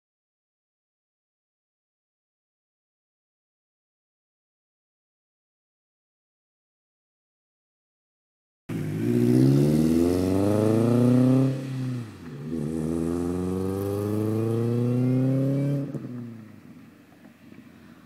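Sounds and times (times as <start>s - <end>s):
car engine accelerating hard: 8.7s - 16.9s.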